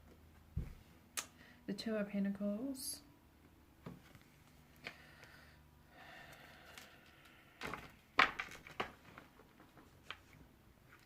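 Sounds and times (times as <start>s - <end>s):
cards rustling: 6.4s - 11.0s.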